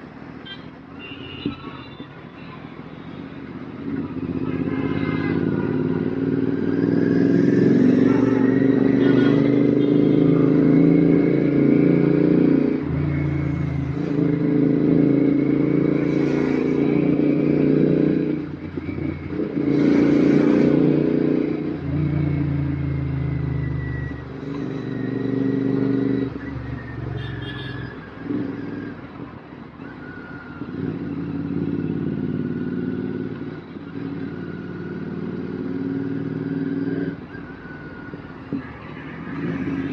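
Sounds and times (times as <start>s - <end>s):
motorcycle engine revving: 5.3s - 27.6s, 30.6s - 39.9s.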